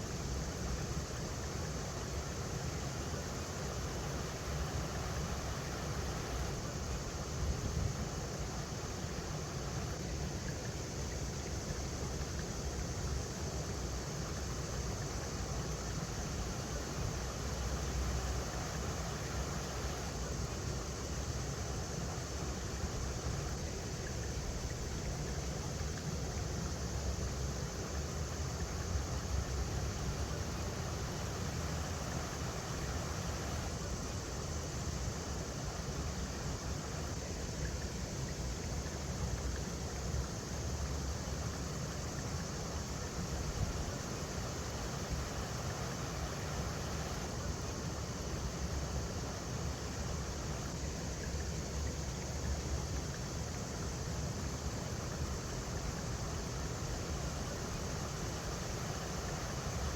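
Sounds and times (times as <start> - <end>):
river running over rocks: 28.9 - 35.2, 42.0 - 49.6.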